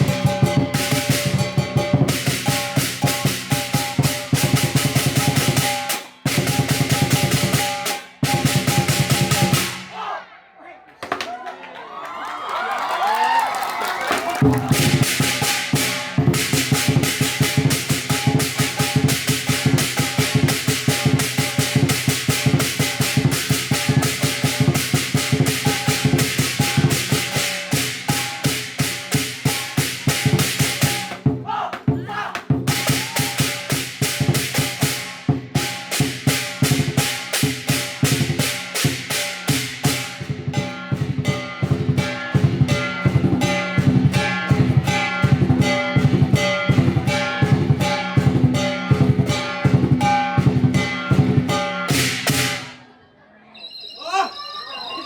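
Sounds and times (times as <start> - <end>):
gong: 0.0 - 5.8, 40.5 - 52.6
big drum beating: 0.0 - 9.9, 14.4 - 52.7
crash cymbals: 43.8 - 52.7.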